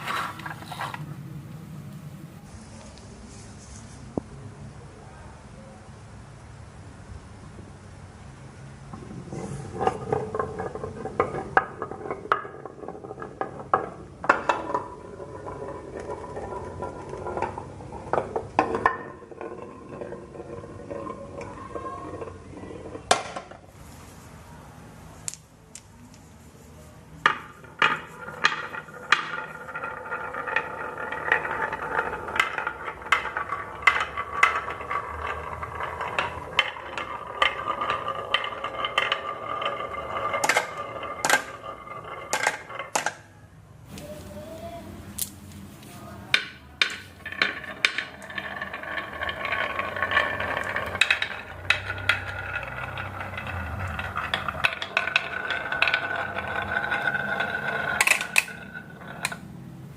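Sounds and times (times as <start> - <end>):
marbles rolling on wooden track: 0.0 - 3.1, 8.9 - 24.2, 27.1 - 43.4, 46.2 - 59.9
marbles clicking and clacking: 9.7 - 23.6, 27.2 - 43.3, 46.3 - 59.7.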